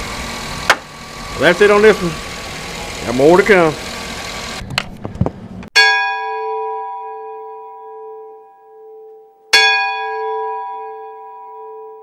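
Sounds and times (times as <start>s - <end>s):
bell ringing: 5.8s - 12.0s.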